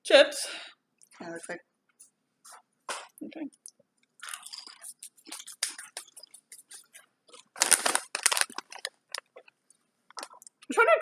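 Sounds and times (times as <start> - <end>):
chips being chewed: 4.2 - 10.6.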